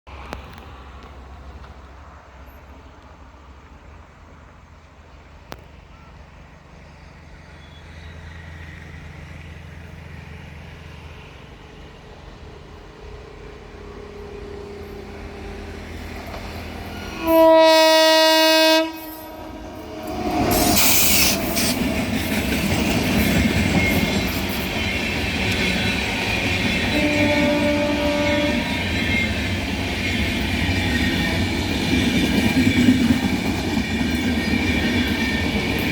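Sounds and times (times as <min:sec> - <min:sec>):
locomotive rumble: 0:00.1 - 0:35.9
locomotive rushing past: 0:00.1 - 0:35.9
train wheel clatter: 0:14.0 - 0:17.2, 0:20.0 - 0:35.9
train horn blast: 0:16.8 - 0:21.8, 0:25.5 - 0:29.4.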